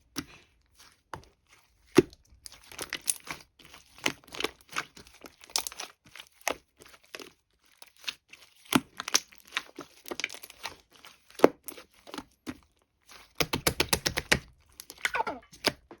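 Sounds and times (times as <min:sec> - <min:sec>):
crunchy sticky material crackling: 0:00.2 - 0:15.8.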